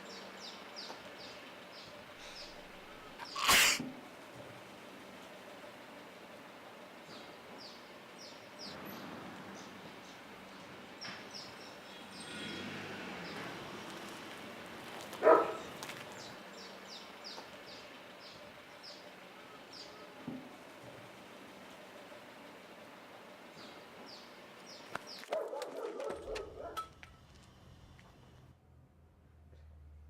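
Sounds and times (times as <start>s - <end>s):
small birds chirping: 0.0s - 3.8s, 15.2s - 20.2s, 23.4s - 25.3s
outdoor background hiss: 0.0s - 25.2s.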